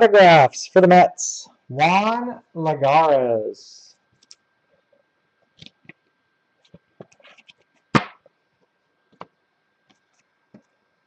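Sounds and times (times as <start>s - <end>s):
sharp knock: 7.9s - 8.2s.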